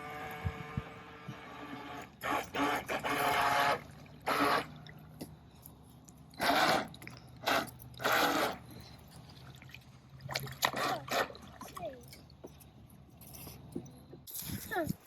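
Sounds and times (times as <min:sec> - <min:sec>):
small boat motor whine: 0:00.0 - 0:05.2, 0:06.3 - 0:09.1
water splashing: 0:09.3 - 0:12.1.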